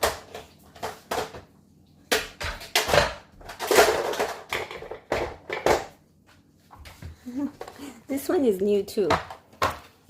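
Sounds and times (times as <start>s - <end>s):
plastic toy knocks and clatters: 2.1s - 5.9s, 9.0s - 9.9s.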